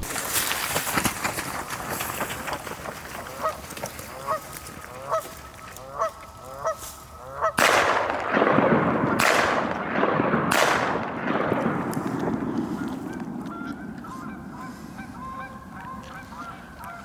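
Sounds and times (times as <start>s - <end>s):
geese honking: 3.1s - 7.7s, 12.0s - 17.0s.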